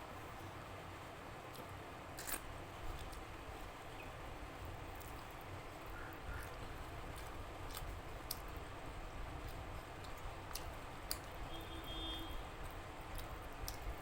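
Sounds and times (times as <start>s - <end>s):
low steady hiss: 0.0s - 14.0s
mouth clicks while chewing: 12.7s - 13.9s.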